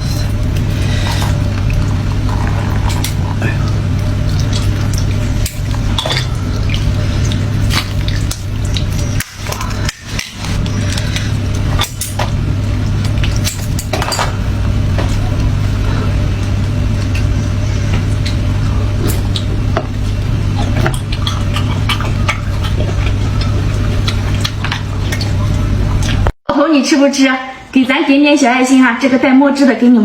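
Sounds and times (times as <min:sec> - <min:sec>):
steady low hum: 0:00.0 - 0:26.4
utensils clinking on dishes: 0:13.4 - 0:14.4.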